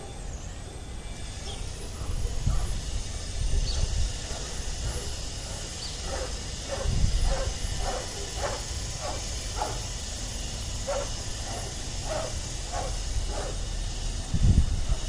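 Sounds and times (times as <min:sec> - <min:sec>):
dog barking: 0:01.5 - 0:02.9, 0:06.0 - 0:09.9, 0:10.8 - 0:13.7.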